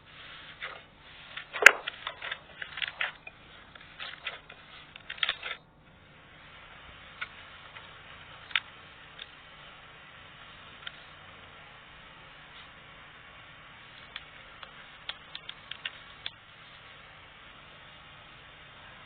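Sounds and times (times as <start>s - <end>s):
slime crackling and popping: 14.0s - 16.4s.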